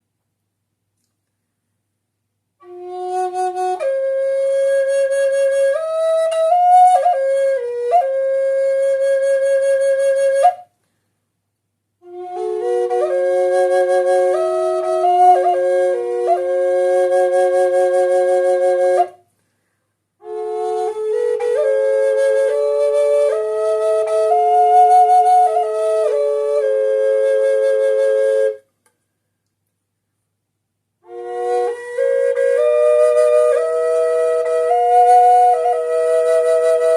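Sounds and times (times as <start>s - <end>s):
drone flute playing: 2.6s - 10.6s, 12.0s - 19.2s, 20.2s - 28.6s, 31.0s - 36.9s.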